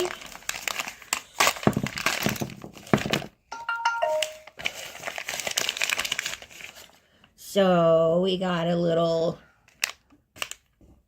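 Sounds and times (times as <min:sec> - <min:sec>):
plastic packaging crinkling: 0:00.0 - 0:03.4, 0:04.2 - 0:07.0, 0:09.7 - 0:10.8.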